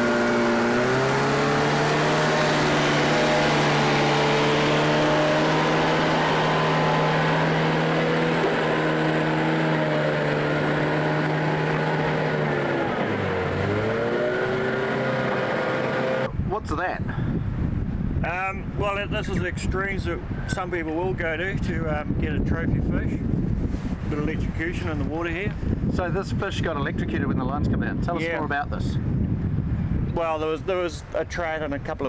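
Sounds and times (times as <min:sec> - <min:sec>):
diesel engine running: 0:00.0 - 0:16.3.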